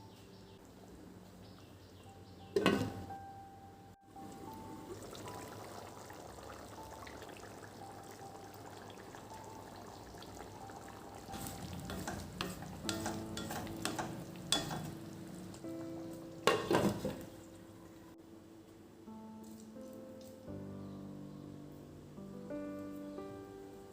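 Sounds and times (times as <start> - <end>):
soft background music: 0.0 - 23.9
sizzling hiss: 4.2 - 17.7.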